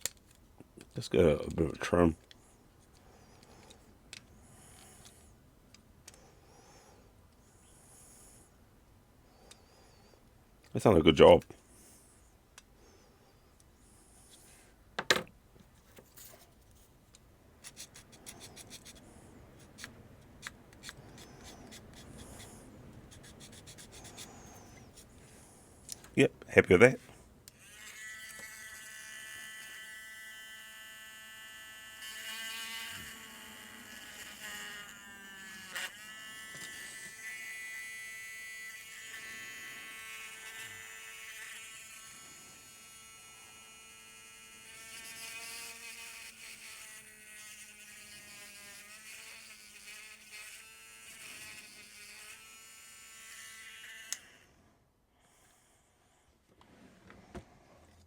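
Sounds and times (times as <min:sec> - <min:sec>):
mini drill buzzing whine: 0:17.6 - 0:25.6, 0:27.5 - 0:54.5.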